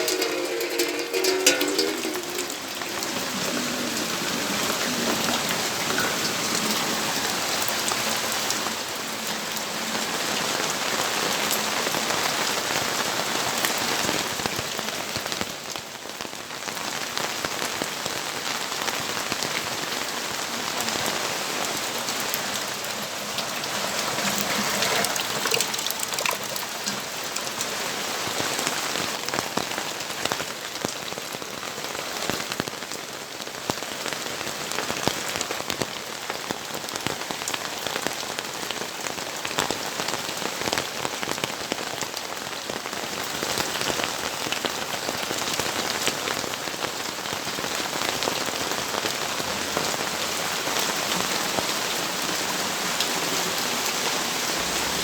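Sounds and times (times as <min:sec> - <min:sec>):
drops ticking on hard surfaces: 0:00.0 - 0:04.3
steady rain falling: 0:00.0 - 0:55.0.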